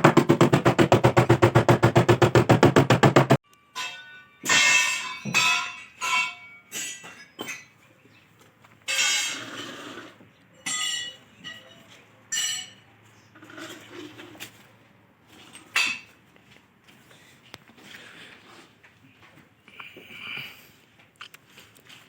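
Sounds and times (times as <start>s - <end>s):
metal objects clinking: 3.8s - 7.8s.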